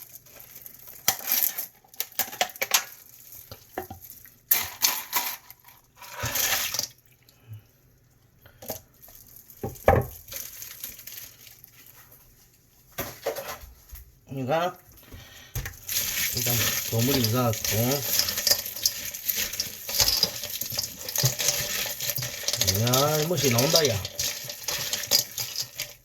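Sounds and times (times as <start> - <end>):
ice cubes clattering into bowl: 0.1 - 7.0, 15.7 - 26.0
ice cubes clinking: 0.1 - 7.0, 15.7 - 26.0.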